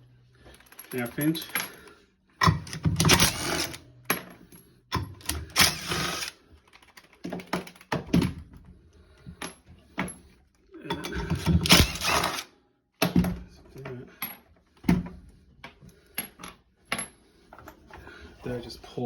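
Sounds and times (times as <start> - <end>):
ratchet wrench clicking: 5.2 - 6.4.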